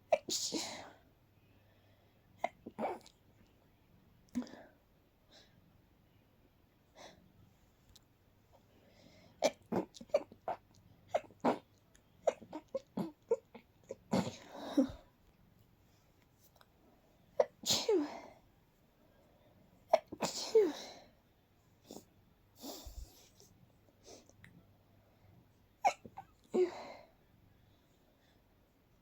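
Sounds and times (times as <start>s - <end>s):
person sneezing stifled: 17.4s - 18.3s, 19.9s - 21.0s.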